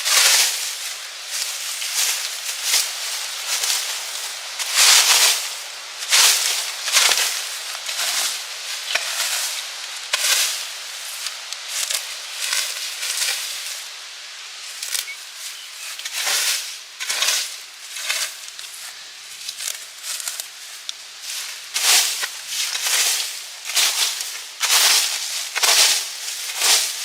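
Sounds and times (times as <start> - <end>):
wood fire crackling: 0.0 - 13.8.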